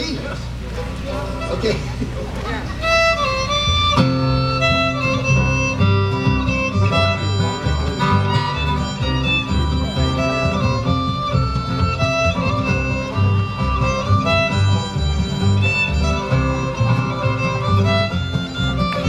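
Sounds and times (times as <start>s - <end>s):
bluegrass fiddle: 0.6s - 19.0s
acoustic guitar: 0.7s - 19.0s.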